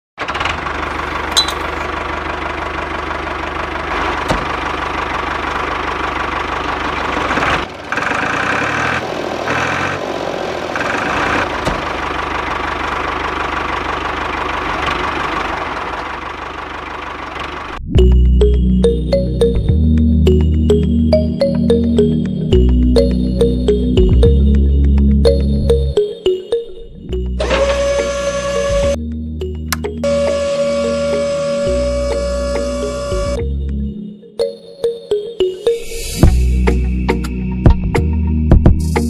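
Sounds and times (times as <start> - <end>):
motor running: 27.4 - 29.0, 30.0 - 33.4.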